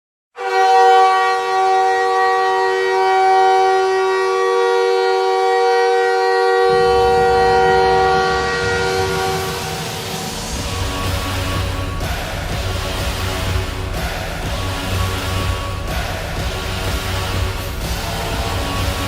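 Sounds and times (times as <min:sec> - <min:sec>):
arena goal horn chord: 0:00.4 - 0:19.0
low rumble: 0:06.4 - 0:19.0.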